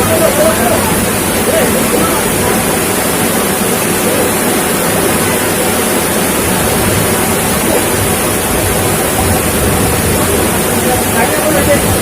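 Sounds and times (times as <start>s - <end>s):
heavy rain: 0.0s - 12.0s
rushing floodwater: 0.0s - 12.0s.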